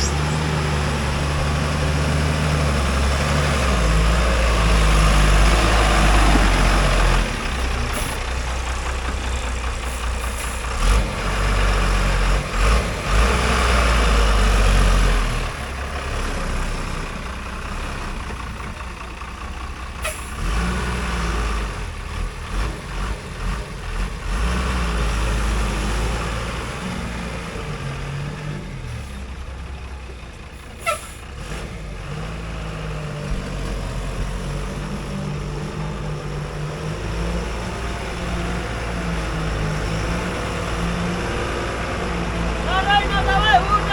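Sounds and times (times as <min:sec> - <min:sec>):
diesel engine working under load: 0:00.0 - 0:43.9.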